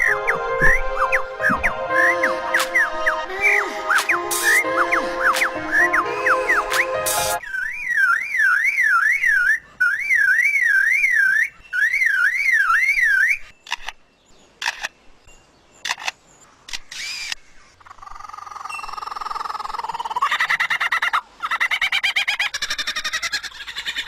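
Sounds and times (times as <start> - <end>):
rising chattering bird call: 1.5 - 13.6
bird mimicking car alarm wail: 5.8 - 13.5
bird mimicking camera clicks and whirs: 13.6 - 14.0, 14.6 - 15.0, 15.8 - 17.4.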